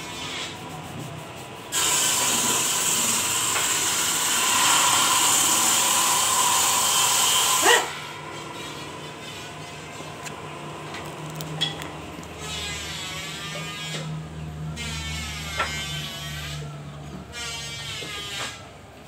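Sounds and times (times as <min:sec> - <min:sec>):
sandpaper hissing on wood: 0:00.0 - 0:07.9.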